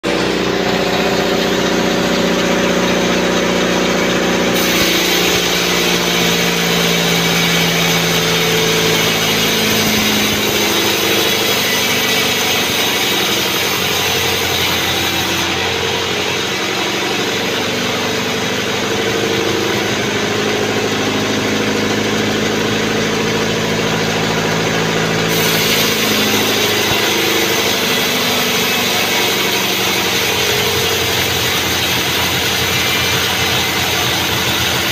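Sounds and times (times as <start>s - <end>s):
band saw running: 0.0s - 34.9s
saw blade hissing through log: 4.5s - 18.7s, 25.2s - 34.9s.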